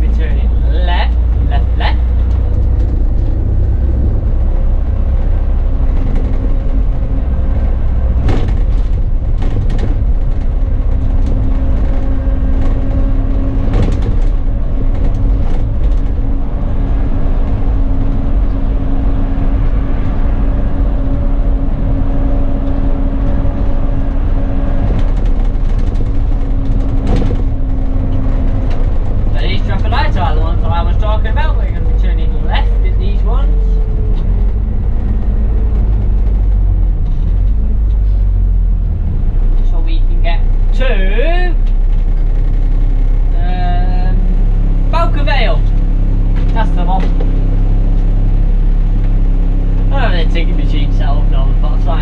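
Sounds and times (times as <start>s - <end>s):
bus engine and road rumble: 0.0s - 52.0s
knocks and rattles: 1.0s - 32.0s, 32.6s - 38.0s.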